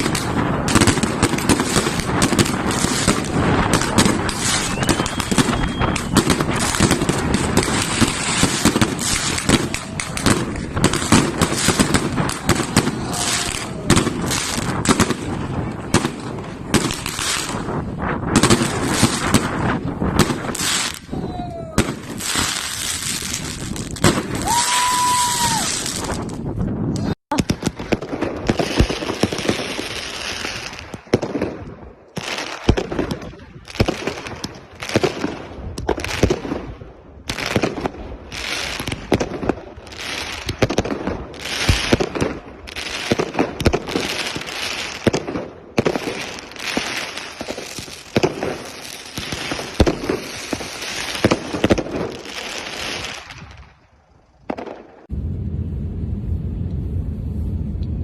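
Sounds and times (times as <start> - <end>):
fireworks bangs and crackling: 0.0 - 58.0
steady low rumble: 55.1 - 58.0.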